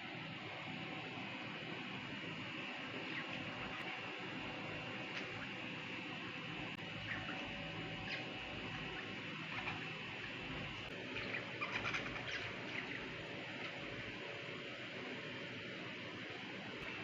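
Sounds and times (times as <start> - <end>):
budgerigars chirping: 7.0 - 9.9, 11.1 - 13.1.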